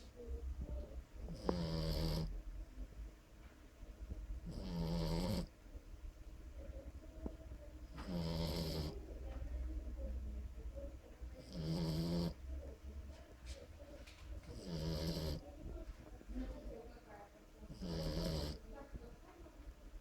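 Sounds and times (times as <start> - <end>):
quiet breathing: 0.0 - 20.0
loud pitched snores: 1.3 - 2.3, 4.5 - 5.5, 8.0 - 9.0, 11.4 - 12.4, 14.5 - 15.4, 17.7 - 18.6.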